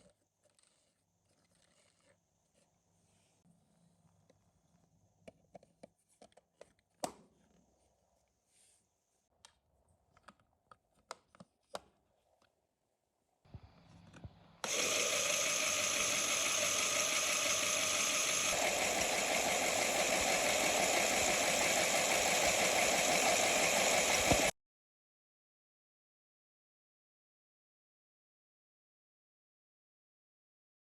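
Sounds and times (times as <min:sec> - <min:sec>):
motor-driven mechanism clattering: 0:14.6 - 0:24.5.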